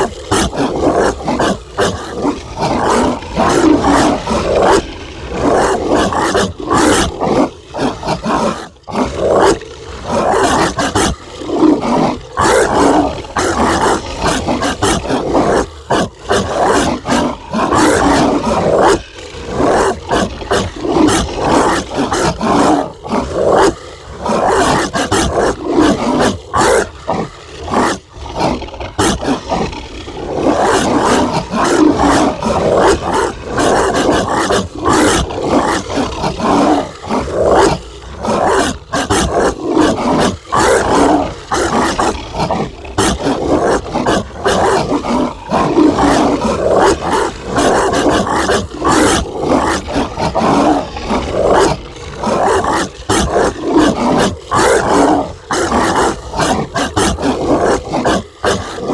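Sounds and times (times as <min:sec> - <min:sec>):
harsh dog barking: 0:00.0 - 0:58.9.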